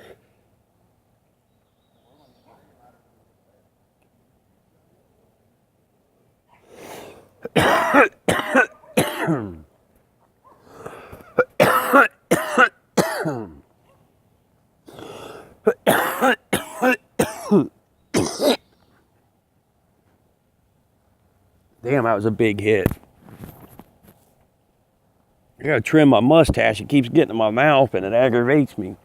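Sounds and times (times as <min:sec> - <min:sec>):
drawn breath: 0:06.6 - 0:07.4, 0:10.5 - 0:11.3, 0:14.9 - 0:15.6
man coughing: 0:07.4 - 0:09.6, 0:10.9 - 0:13.6, 0:15.6 - 0:18.6.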